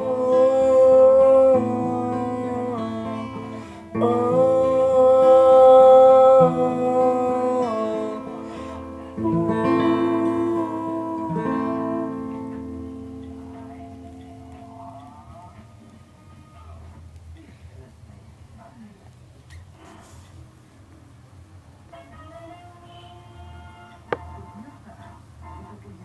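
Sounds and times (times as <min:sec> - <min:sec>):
melody of long held notes: 0:00.0 - 0:15.4
acoustic guitar: 0:00.0 - 0:17.6.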